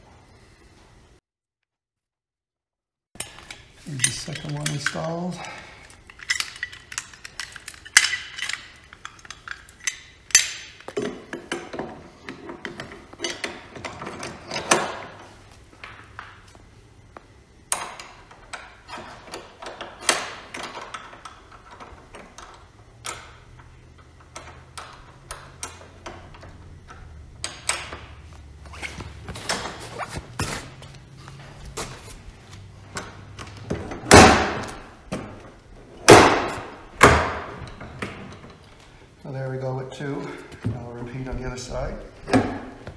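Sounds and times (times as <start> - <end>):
hand tools being handled: 3.2 - 11.2.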